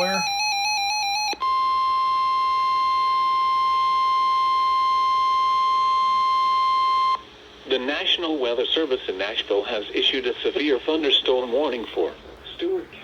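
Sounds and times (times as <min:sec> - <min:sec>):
steady alert beep: 0:00.0 - 0:00.4.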